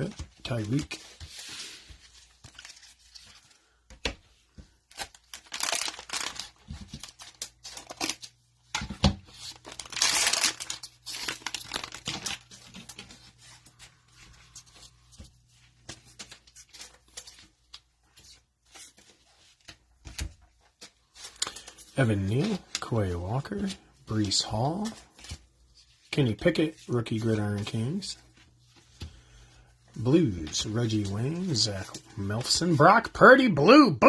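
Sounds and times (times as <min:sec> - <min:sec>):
cellophane crinkling: 0:04.8 - 0:08.4, 0:09.2 - 0:15.0
cellophane wrapper ripping: 0:04.9 - 0:08.4, 0:09.4 - 0:12.9.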